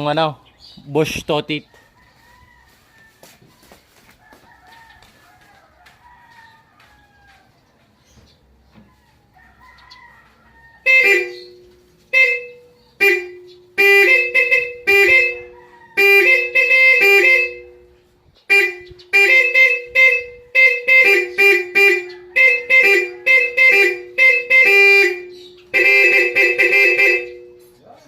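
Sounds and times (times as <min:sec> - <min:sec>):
two-tone car horns honking: 0:10.8 - 0:27.8.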